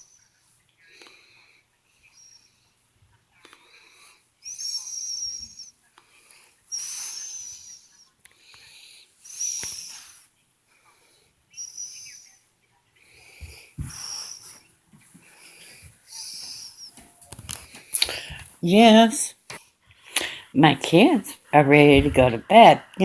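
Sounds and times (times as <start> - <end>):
wheezy whistling breathing: 0.0 - 2.8, 3.5 - 12.4, 13.0 - 18.4.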